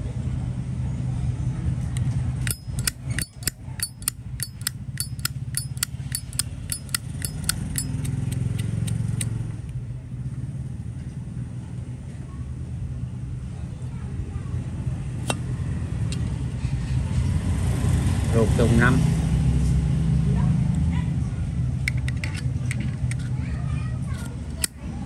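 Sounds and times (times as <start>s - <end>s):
low traffic rumble: 0.0s - 25.0s
lighter lid clicking open and shut: 2.4s - 9.3s, 24.6s - 24.8s.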